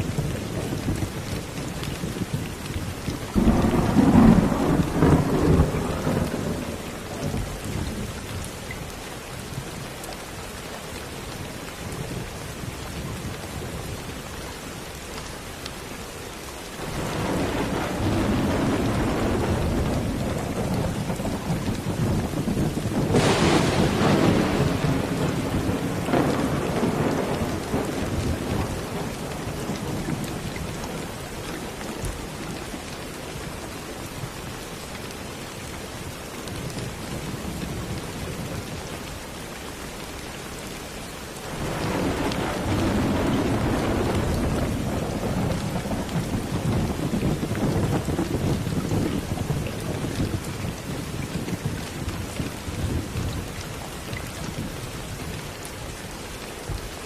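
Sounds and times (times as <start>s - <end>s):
steady rain: 0.0s - 57.0s
rolling thunder: 3.2s - 8.2s, 16.8s - 31.3s, 41.5s - 53.4s.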